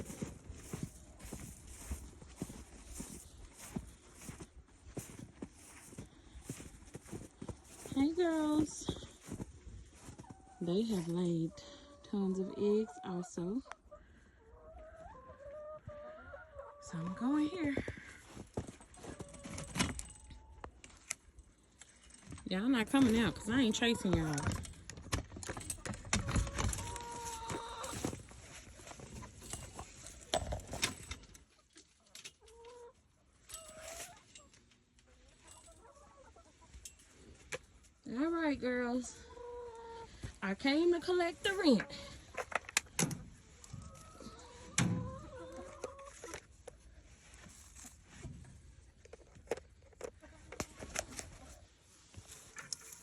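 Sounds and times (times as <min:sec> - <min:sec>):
hens clucking: 0:09.9 - 0:17.7, 0:22.5 - 0:24.6, 0:26.1 - 0:30.8, 0:35.1 - 0:46.8.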